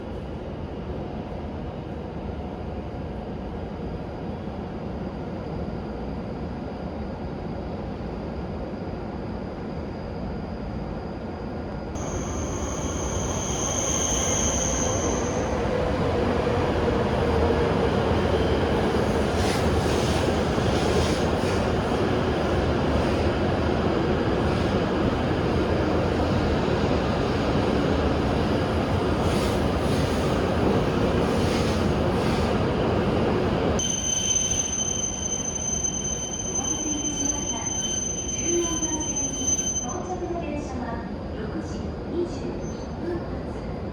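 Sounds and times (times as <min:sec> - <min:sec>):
train running noise: 0:10.3 - 0:42.8
thin high squeal: 0:12.0 - 0:15.6, 0:33.8 - 0:40.0.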